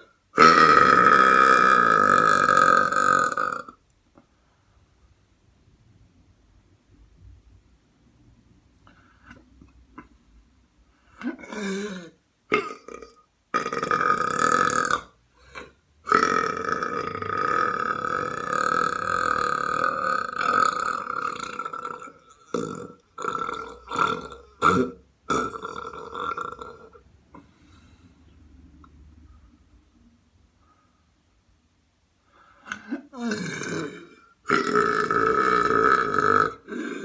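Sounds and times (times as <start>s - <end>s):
person belching: 0.0s - 3.8s, 11.2s - 27.0s, 32.7s - 37.0s.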